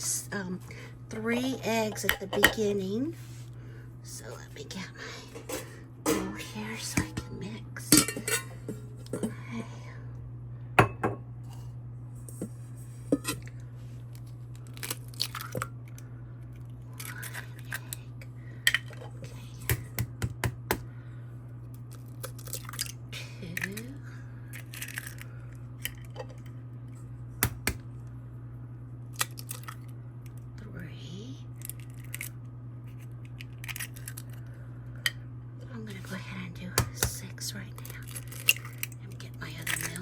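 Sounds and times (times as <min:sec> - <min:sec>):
steady low hum: 0:00.0 - 0:40.0
bowl and utensils clinking: 0:01.9 - 0:02.7, 0:05.3 - 0:09.3.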